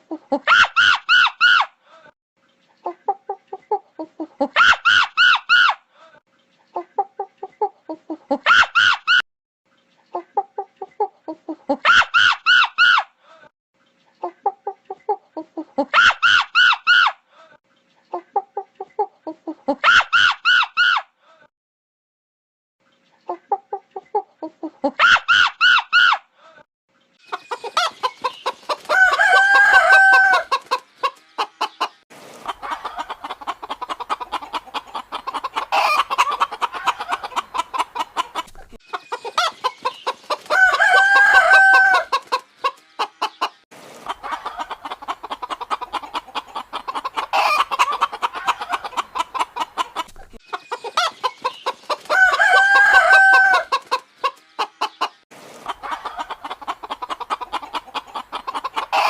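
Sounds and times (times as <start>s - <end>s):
chickens clucking: 2.6s - 5.5s, 6.5s - 8.4s, 9.9s - 12.7s, 14.0s - 16.8s, 18.0s - 19.8s, 23.2s - 25.0s, 27.2s - 59.0s
rooster crowing: 28.9s - 30.6s, 40.5s - 42.2s, 52.1s - 53.8s.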